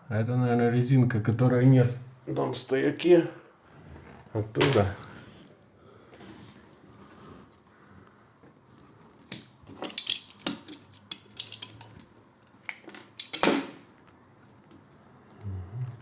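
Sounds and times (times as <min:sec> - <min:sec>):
small hard objects clattering: 0:09.7 - 0:12.1.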